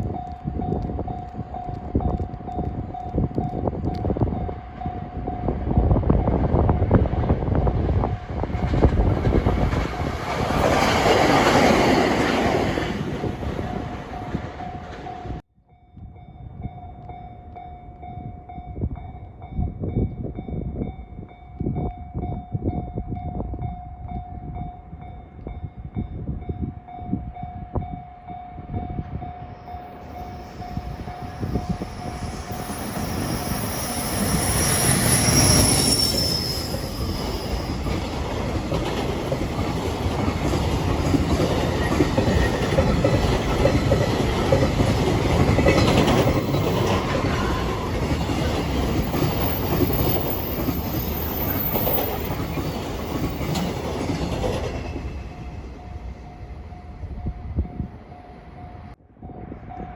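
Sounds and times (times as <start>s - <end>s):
electric train passing: 0.0s - 15.4s, 27.1s - 59.9s
level crossing warning bell: 26.6s - 59.0s
train wheel squeal: 28.9s - 59.9s.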